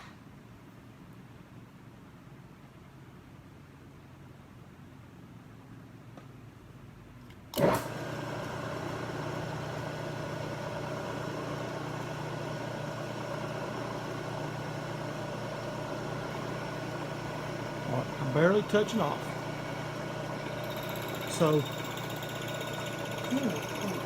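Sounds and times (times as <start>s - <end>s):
milling machine spindle humming: 7.6s - 24.0s.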